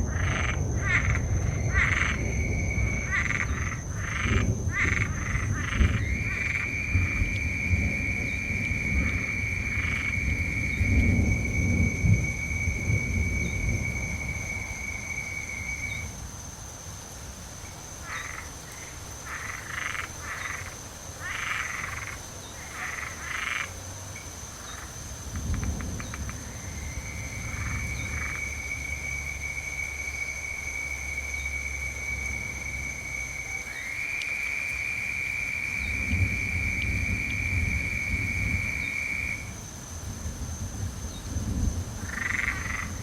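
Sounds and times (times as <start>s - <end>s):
low thunder rumbling: 0.0s - 16.3s, 25.3s - 33.4s, 35.4s - 43.0s
frogs croaking: 0.0s - 43.0s.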